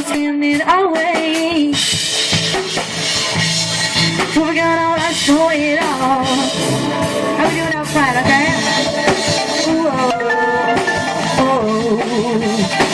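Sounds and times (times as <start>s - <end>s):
drum kit: 0.0s - 12.9s
live band playing: 0.0s - 12.9s
gliding melodic line: 6.5s - 12.5s.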